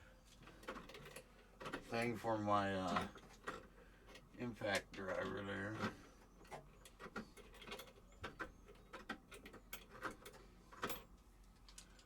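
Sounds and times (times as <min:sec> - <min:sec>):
hand tools and hardware clicking: 0:02.8 - 0:12.0.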